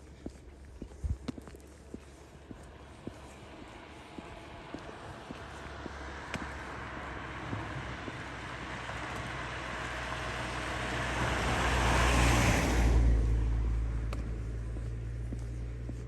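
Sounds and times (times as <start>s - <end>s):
car passing by: 2.8s - 14.6s.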